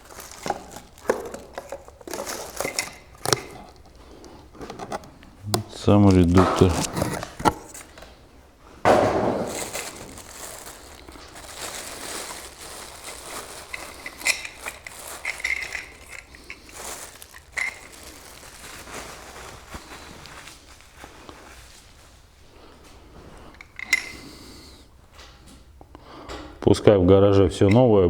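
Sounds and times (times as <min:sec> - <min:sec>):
rustling and crinkling: 0:00.0 - 0:25.8
light clicks and clinks: 0:00.1 - 0:04.8, 0:09.8 - 0:18.6, 0:23.5 - 0:24.5.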